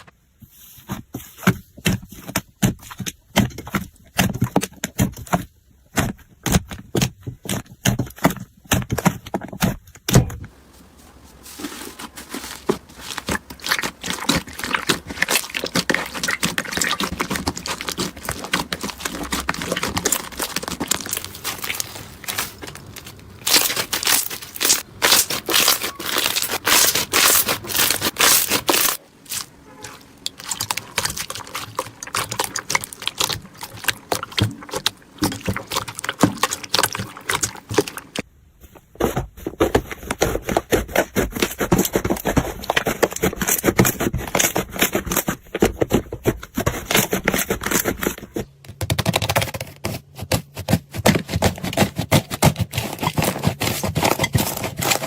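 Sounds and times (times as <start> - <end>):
slime squished by hand: 11.5 - 29.5.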